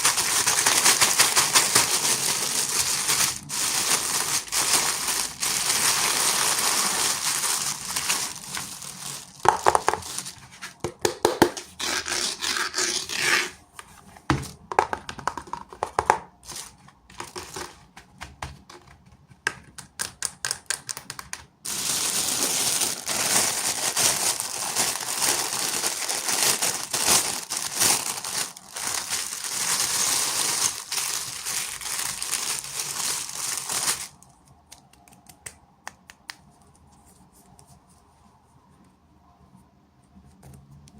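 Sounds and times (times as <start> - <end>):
plastic packaging crinkling: 0.0 - 13.4, 15.8 - 18.2, 20.5 - 34.5.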